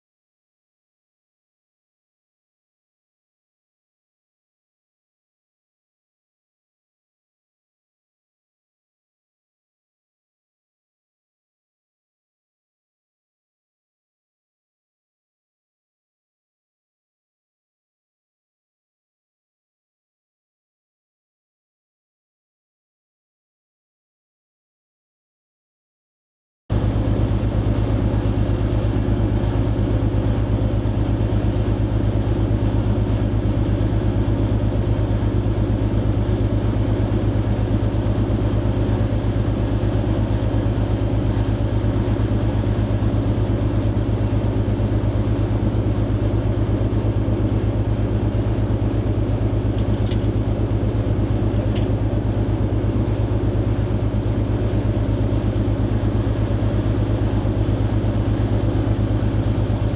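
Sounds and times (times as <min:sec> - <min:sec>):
diesel engine humming: 0:26.7 - 0:33.9.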